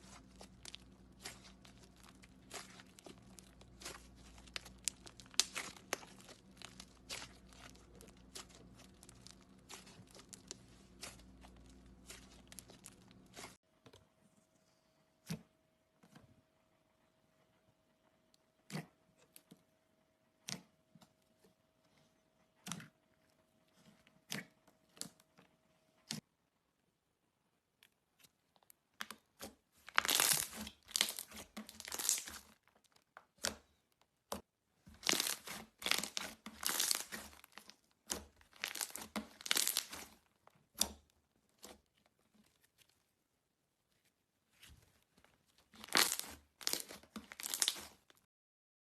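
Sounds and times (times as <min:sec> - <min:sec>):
slime squeezed by hand: 0:00.0 - 0:13.6, 0:29.9 - 0:32.6, 0:35.0 - 0:40.2, 0:45.7 - 0:48.1.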